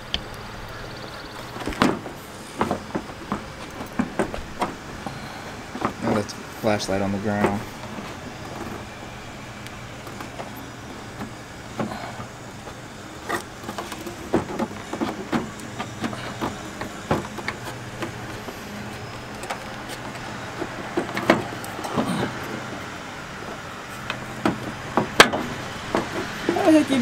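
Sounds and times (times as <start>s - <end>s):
steady low hum: 0.0s - 27.0s
plastic parts clicking and knocking: 13.2s - 22.9s, 24.0s - 26.7s.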